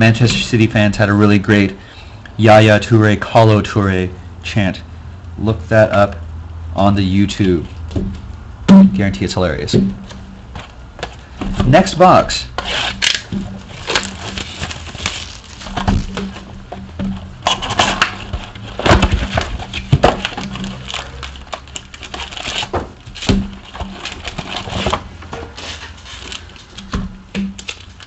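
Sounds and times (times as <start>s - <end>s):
packs ripping open: 12.6s - 16.2s, 17.5s - 26.9s, 27.6s - 28.0s
foil packs crinkling: 12.6s - 16.8s, 17.4s - 28.0s.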